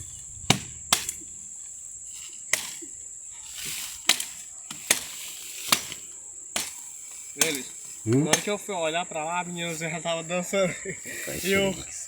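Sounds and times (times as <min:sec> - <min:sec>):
high insect whine: 0:00.0 - 0:12.0
blade chopping wood: 0:00.5 - 0:01.2, 0:04.0 - 0:06.0.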